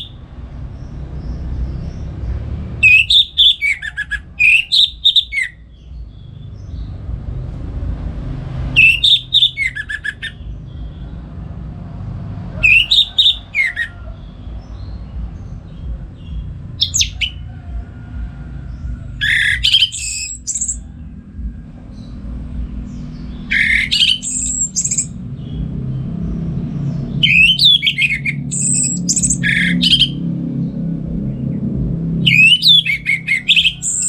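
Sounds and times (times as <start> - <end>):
thrush whistled song: 0.0 - 0.2, 2.8 - 5.7, 8.7 - 11.1, 12.6 - 14.0, 16.2 - 17.5, 19.2 - 21.0, 22.9 - 25.6, 27.2 - 30.3, 32.2 - 34.0
harsh high bird calls: 0.0 - 0.3, 2.8 - 6.4, 8.7 - 11.1, 12.6 - 15.2, 15.8 - 17.5, 18.7 - 21.1, 22.8 - 25.7, 27.1 - 30.3, 32.2 - 34.0.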